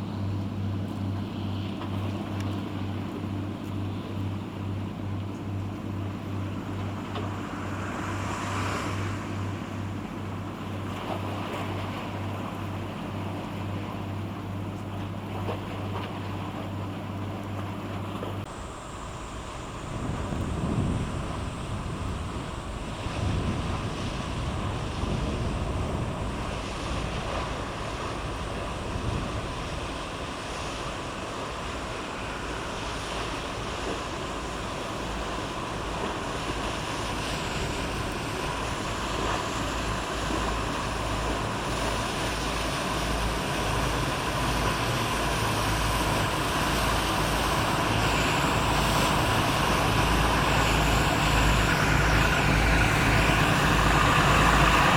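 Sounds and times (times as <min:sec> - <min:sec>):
boat engines rumbling: 0:00.0 - 0:54.9
water wash: 0:00.0 - 0:54.9
wind buffeting microphone: 0:19.1 - 0:54.9.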